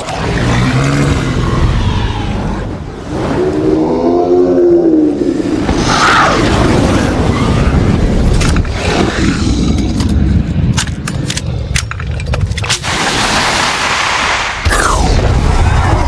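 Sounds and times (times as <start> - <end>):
deep rumble: 0.0 - 12.6, 14.6 - 16.0
sharp clicks and cracks: 9.4 - 12.9.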